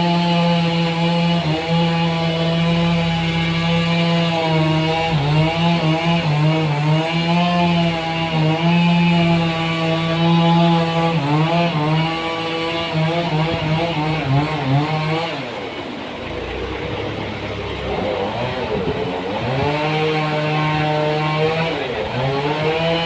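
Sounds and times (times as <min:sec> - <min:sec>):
sawmill engine running: 0:00.0 - 0:23.0.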